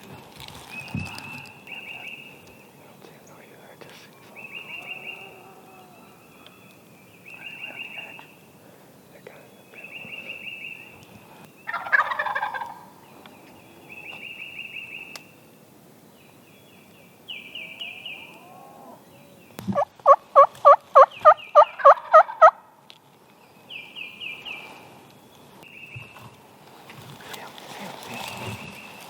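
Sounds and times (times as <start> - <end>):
turkey yelps: 11.7 - 12.8, 19.8 - 22.6
turkey gobbling: 11.7 - 12.9, 19.7 - 22.6.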